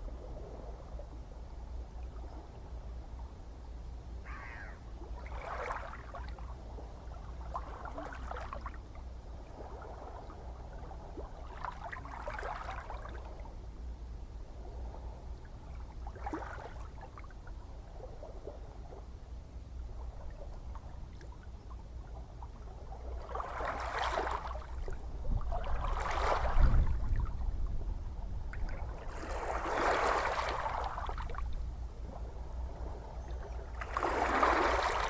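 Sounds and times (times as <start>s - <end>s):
low rumble of sea: 0.0s - 35.0s
ocean waves lapping and splashing: 4.4s - 13.7s, 14.5s - 35.0s.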